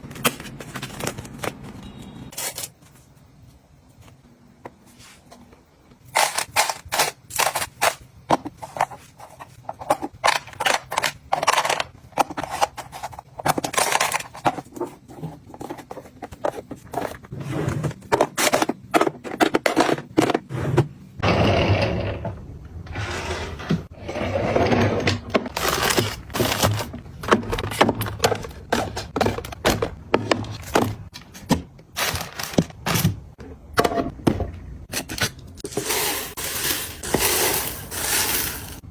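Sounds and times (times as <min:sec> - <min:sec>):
rustling or pouring noise: 0:35.7 - 0:38.8.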